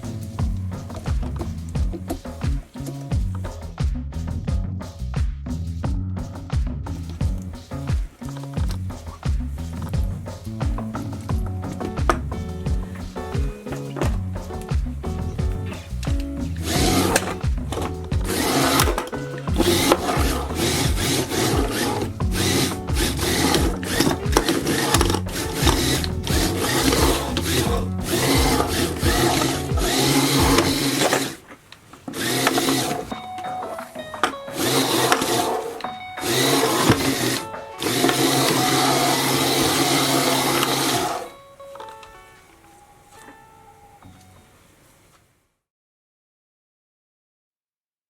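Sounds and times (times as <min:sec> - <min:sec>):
background music with bass line: 0:00.0 - 0:31.2, 0:32.2 - 0:41.3
small gear motors whirring: 0:16.6 - 0:31.4, 0:32.1 - 0:33.2, 0:34.5 - 0:41.3.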